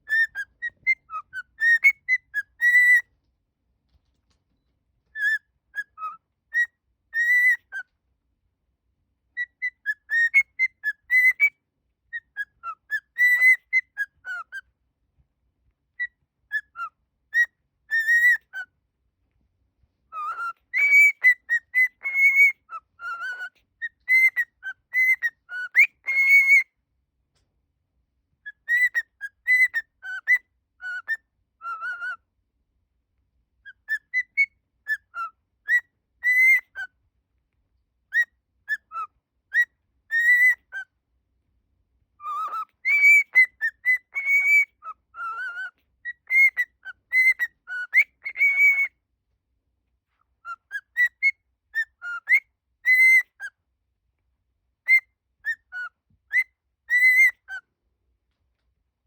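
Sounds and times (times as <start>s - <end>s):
cockatiel whistling a melody: 0.0s - 3.1s, 5.1s - 7.9s, 9.4s - 14.7s, 16.0s - 18.7s, 20.1s - 26.7s, 28.4s - 32.2s, 33.6s - 36.9s, 38.1s - 40.9s, 42.2s - 49.0s, 50.4s - 53.6s, 54.8s - 57.6s.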